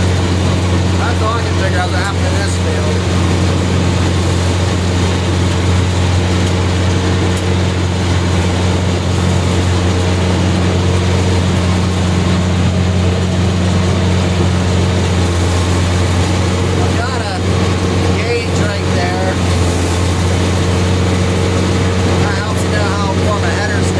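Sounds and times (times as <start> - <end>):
heavy diesel engine droning: 0.0 - 23.9.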